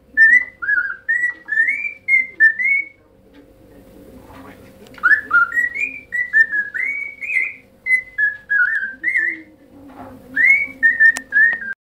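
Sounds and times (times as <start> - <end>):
parrot whistling a tune: 0.2 - 3.0, 5.0 - 9.5, 10.4 - 11.8.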